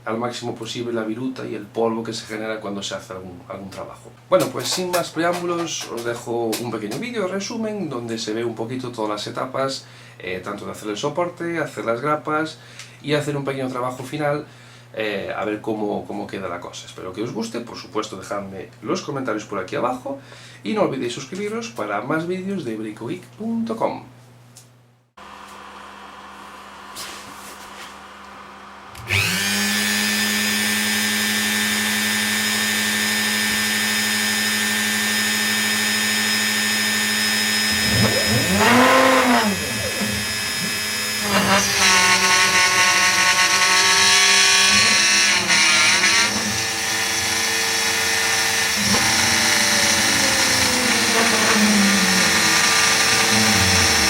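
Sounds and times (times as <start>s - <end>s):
router spindle whining: 28.2s - 54.0s.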